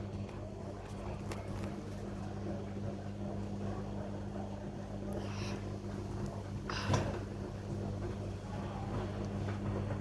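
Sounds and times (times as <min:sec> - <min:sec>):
washing machine humming: 0:00.0 - 0:10.0.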